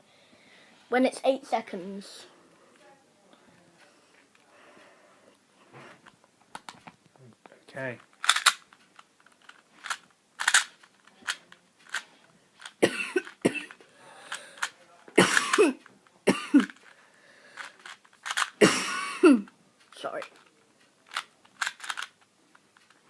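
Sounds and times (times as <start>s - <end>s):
speed cube clicking: 8.2s - 12.0s, 17.6s - 18.6s, 21.0s - 22.2s
person coughing: 12.8s - 13.8s, 15.2s - 16.8s, 18.6s - 19.5s.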